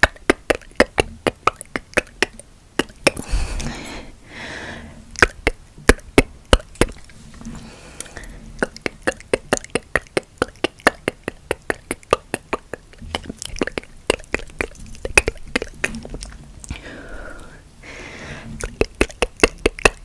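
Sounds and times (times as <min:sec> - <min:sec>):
tongue clicks: 0:00.0 - 0:03.7, 0:08.0 - 0:16.8, 0:18.6 - 0:20.0
breathing: 0:03.2 - 0:05.1, 0:07.4 - 0:08.6, 0:16.7 - 0:18.6.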